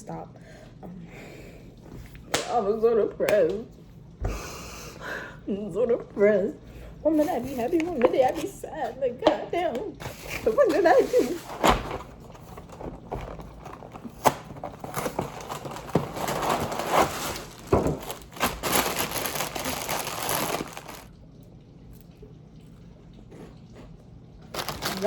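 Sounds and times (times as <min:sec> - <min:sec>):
crinkling and crunching food: 0:09.9 - 0:21.2, 0:24.4 - 0:25.0.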